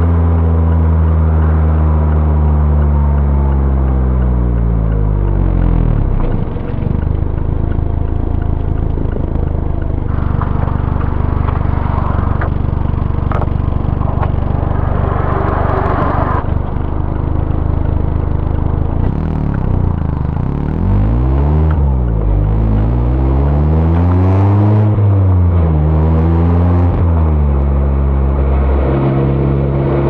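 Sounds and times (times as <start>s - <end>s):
sharp ticks: 0.0s - 23.2s
car engine and exhaust: 0.0s - 30.0s.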